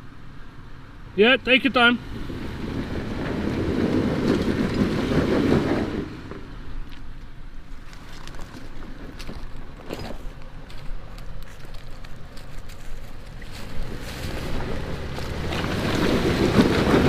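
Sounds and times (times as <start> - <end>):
truck engine revving hard: 1.8 - 6.3, 13.7 - 17.0.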